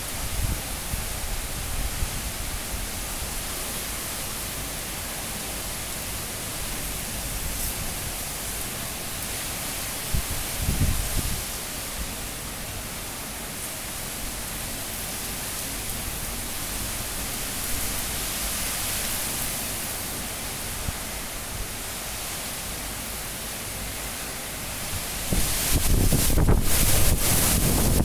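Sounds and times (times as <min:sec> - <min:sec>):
high wind rushing: 0:24.9 - 0:28.0.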